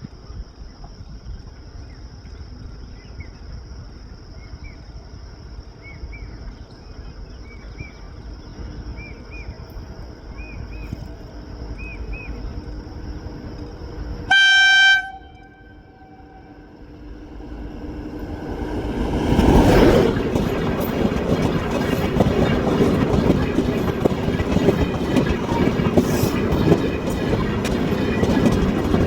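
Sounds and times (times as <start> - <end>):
locomotive horn: 14.3 - 16.9.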